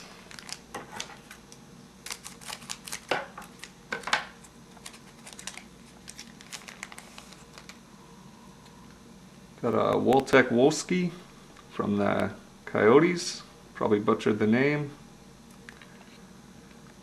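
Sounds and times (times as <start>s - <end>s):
card wrapper crinkling: 0.0s - 4.1s, 4.7s - 7.8s.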